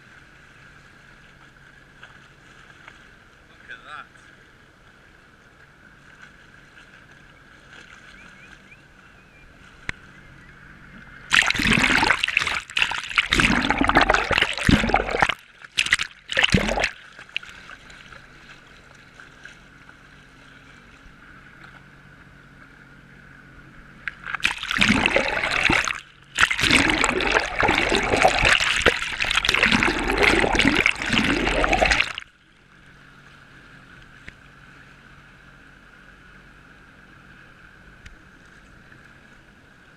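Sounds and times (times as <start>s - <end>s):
water splashing and rushing: 10.8s - 21.8s, 23.8s - 32.7s.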